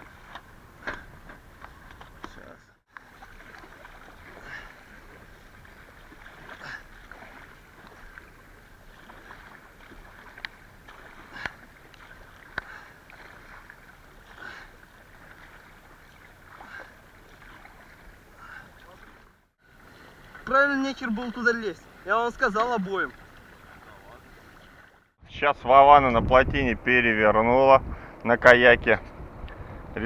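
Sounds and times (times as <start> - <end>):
paddle swish: 2.9 - 20.6
river water rushing: 2.9 - 25.1.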